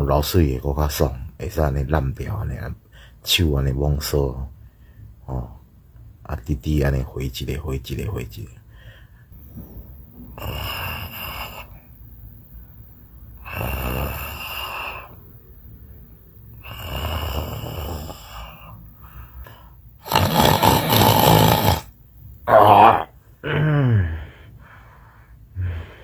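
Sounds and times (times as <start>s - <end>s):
person snoring: 10.4s - 11.8s, 13.4s - 15.2s, 16.6s - 18.8s, 19.4s - 21.9s, 22.5s - 24.2s.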